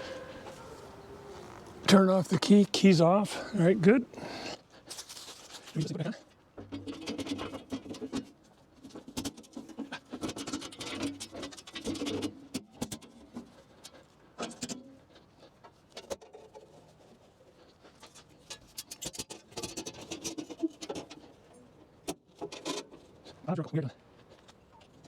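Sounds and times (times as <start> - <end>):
hands scratching and rustling: 0.0 - 3.0, 4.7 - 6.0.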